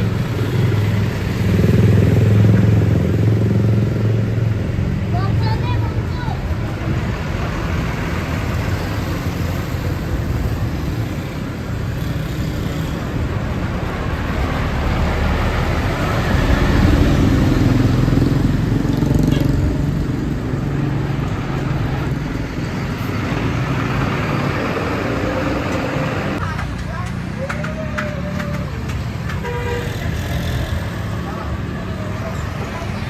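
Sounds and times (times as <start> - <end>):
road traffic: 0.0 - 33.0
heavy vehicle engine passing: 13.0 - 26.6.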